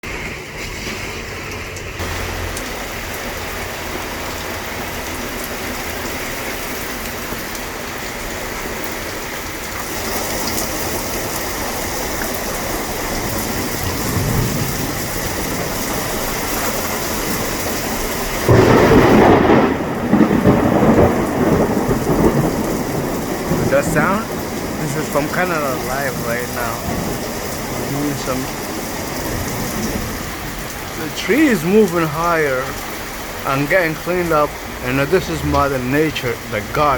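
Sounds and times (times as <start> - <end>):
heavy rain pouring: 0.1 - 36.9
loud thunder rumble: 12.6 - 31.0.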